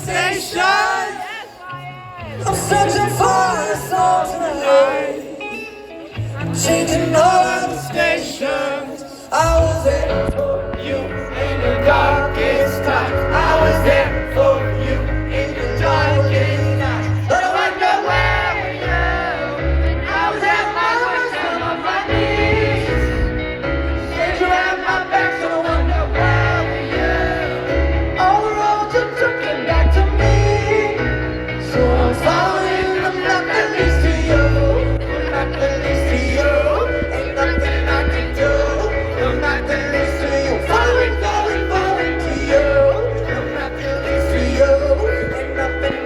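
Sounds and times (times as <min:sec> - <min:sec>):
male singer: 0:00.0 - 0:46.0
pop-rock band playing: 0:01.8 - 0:46.0
heavy pulsing bass line: 0:09.4 - 0:17.5, 0:22.1 - 0:24.5, 0:33.8 - 0:46.0.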